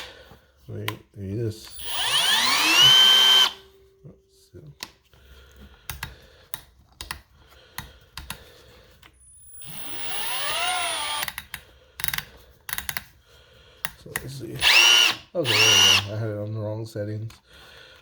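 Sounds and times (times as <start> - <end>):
drill motor whirring: 1.7 - 3.6, 9.3 - 11.4, 14.6 - 16.1.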